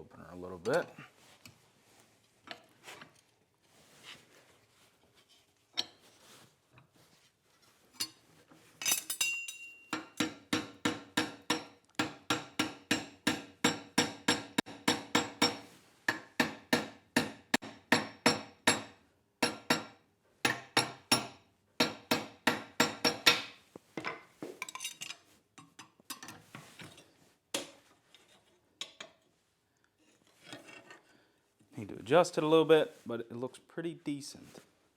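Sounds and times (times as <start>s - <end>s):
hammer ringing on anvil: 9.2s - 15.6s.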